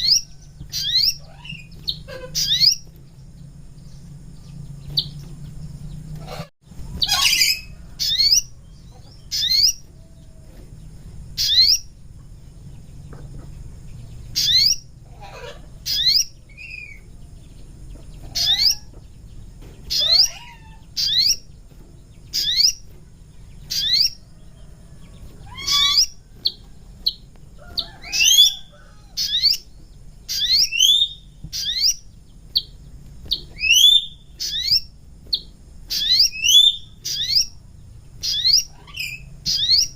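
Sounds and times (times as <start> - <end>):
bird whistling upward notes: 0.0 - 2.9, 6.3 - 8.5, 27.8 - 29.6, 30.3 - 32.0, 33.5 - 34.9, 35.9 - 37.5.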